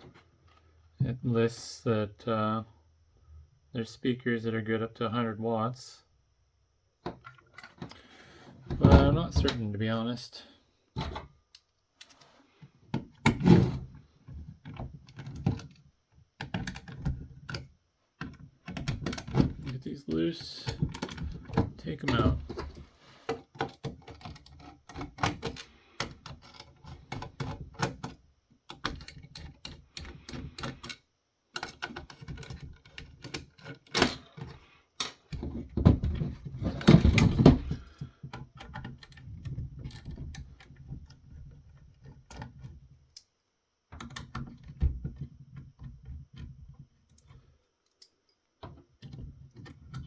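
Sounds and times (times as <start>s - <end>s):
metal parts knocking and rattling: 20.6s - 22.9s, 23.5s - 41.2s.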